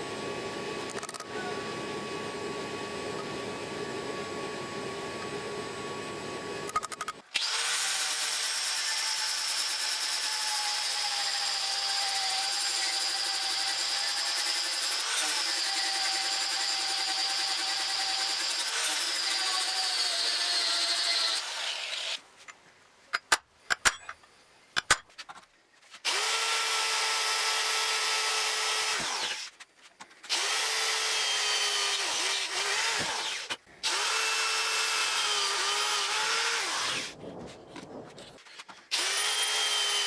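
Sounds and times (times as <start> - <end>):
electric power tool running: 0.3 - 4.5, 6.5 - 21.9
sharp clicks: 0.9 - 1.3, 6.7 - 7.4, 24.8 - 25.0.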